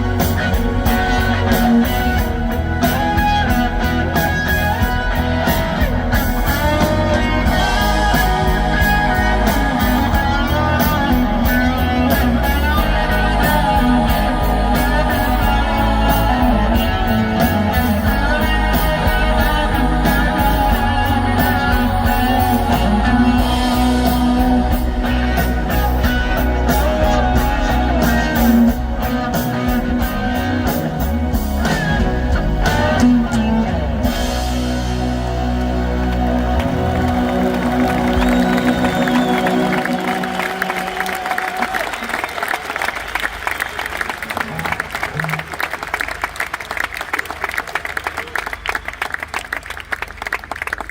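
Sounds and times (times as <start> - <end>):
person singing: 0.0 - 34.6
electric guitar: 0.0 - 42.5
live rock band playing: 0.0 - 46.9
bass: 0.0 - 50.9.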